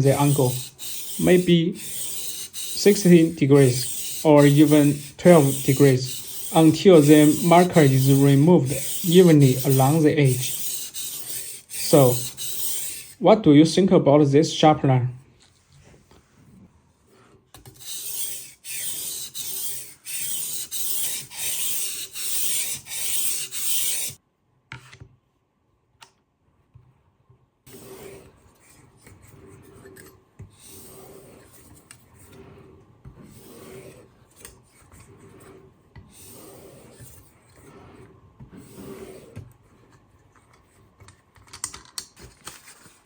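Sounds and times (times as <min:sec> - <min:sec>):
knife rasping on sharpening stone: 0:00.0 - 0:13.2, 0:17.6 - 0:24.2, 0:27.7 - 0:32.6, 0:33.2 - 0:39.4.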